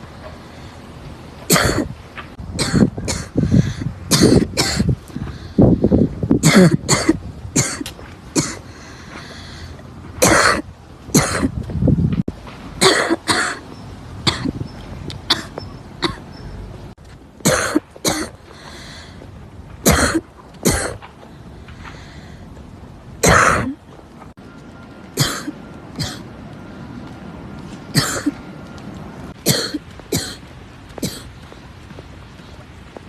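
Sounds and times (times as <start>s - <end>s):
girl coughing: 1.5s - 1.9s, 2.6s - 3.4s, 4.1s - 4.9s, 6.4s - 8.6s, 10.2s - 10.6s, 11.2s - 11.5s, 12.8s - 13.6s, 15.3s - 16.2s, 17.4s - 18.4s, 19.9s - 21.0s, 23.2s - 23.7s, 25.2s - 26.2s, 28.0s - 28.4s, 29.4s - 30.4s, 31.0s - 31.3s.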